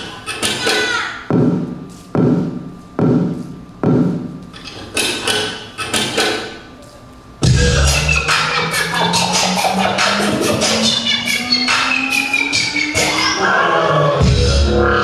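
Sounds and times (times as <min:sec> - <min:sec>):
booming percussive hits: 0:07.4 - 0:08.0
dance music: 0:07.4 - 0:15.0.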